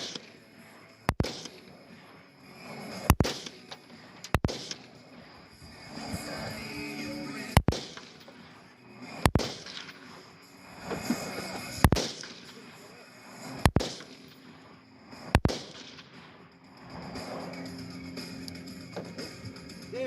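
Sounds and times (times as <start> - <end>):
rifle shots: 0.0 - 2.1, 2.9 - 5.4, 7.5 - 10.3, 11.7 - 16.4.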